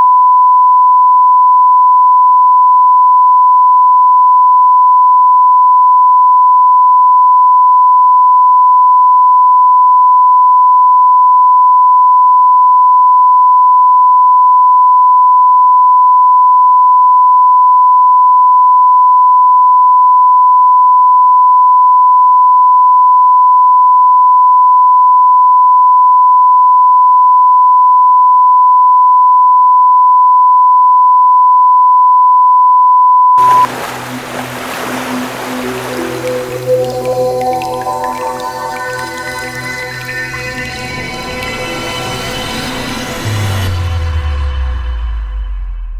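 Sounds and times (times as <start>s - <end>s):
long electronic beep: 30.1s - 33.8s.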